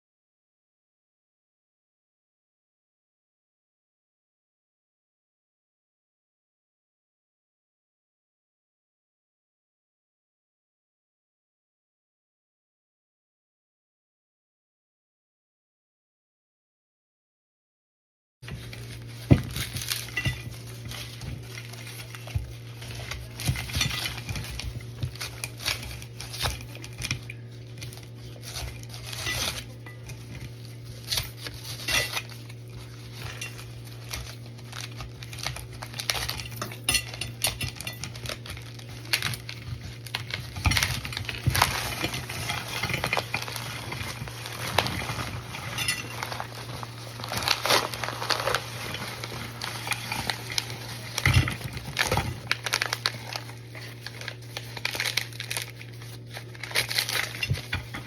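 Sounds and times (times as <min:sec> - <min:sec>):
rustling of handled objects: 0:18.4 - 0:58.0
steady low hum: 0:18.4 - 0:58.0.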